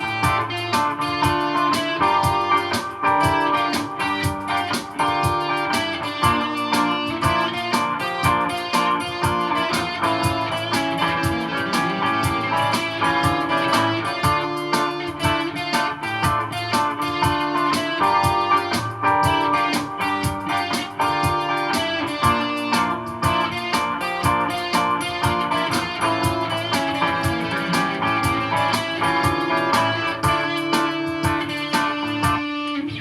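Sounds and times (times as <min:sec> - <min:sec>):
steady percussive pulse: 0:00.0 - 0:32.4
jazz guitar playing: 0:00.0 - 0:33.0
low bass line: 0:09.2 - 0:21.6, 0:25.2 - 0:30.7.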